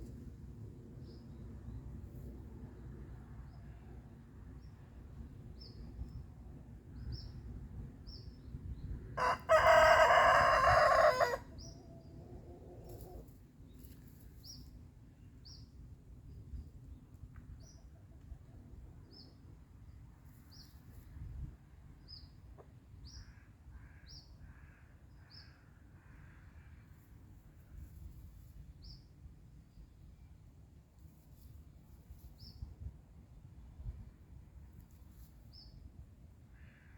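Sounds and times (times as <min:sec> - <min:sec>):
rooster crowing: 0:09.2 - 0:11.6.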